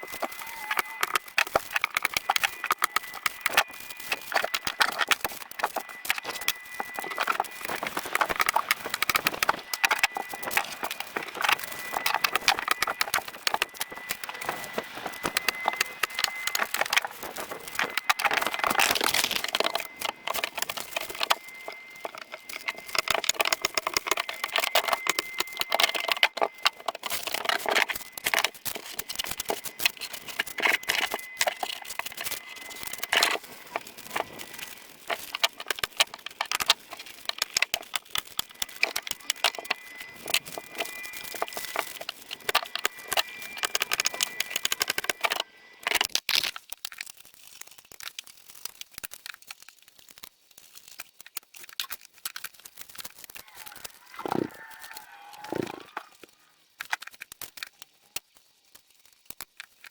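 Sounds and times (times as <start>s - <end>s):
faint high whine: 0.0s - 46.0s.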